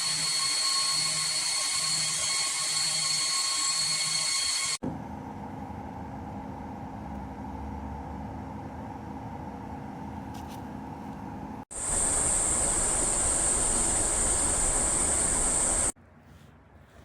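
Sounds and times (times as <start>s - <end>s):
small electric fan humming: 11.7s - 15.9s
fan high-pitched whine: 11.7s - 16.0s.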